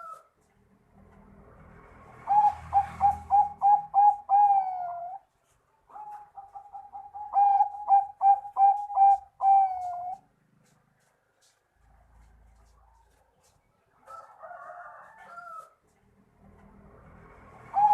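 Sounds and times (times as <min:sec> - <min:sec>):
dove cooing: 0:00.0 - 0:00.3, 0:02.2 - 0:05.3, 0:05.9 - 0:10.3, 0:17.6 - 0:17.9.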